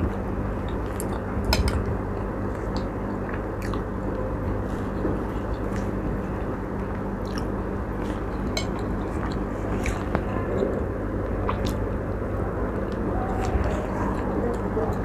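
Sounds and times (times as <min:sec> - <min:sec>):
low hum: 0:00.0 - 0:15.0
person chewing: 0:02.5 - 0:06.0, 0:06.8 - 0:10.8, 0:11.4 - 0:12.0.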